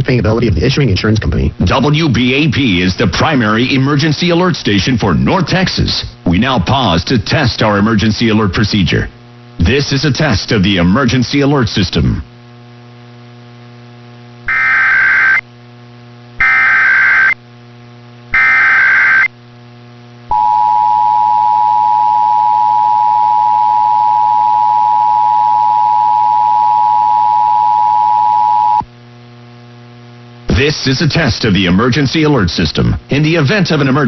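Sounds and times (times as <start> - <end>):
constant low hum: 0.0 - 34.0
buzzy digital warble: 14.5 - 15.4, 16.4 - 17.4, 18.4 - 19.3.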